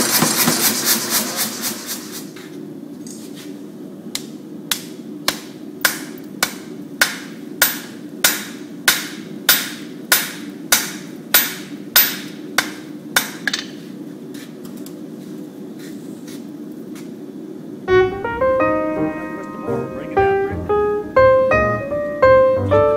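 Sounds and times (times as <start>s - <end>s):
steady low hum: 0.4s - 22.9s
hammer striking iron on anvil: 4.7s - 13.8s.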